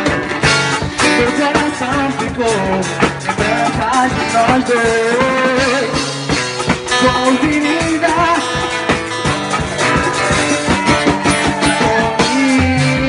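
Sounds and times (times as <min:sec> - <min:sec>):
drums steady beat: 0:00.0 - 0:13.0
guitar: 0:00.0 - 0:13.0
live band playing: 0:00.0 - 0:13.0.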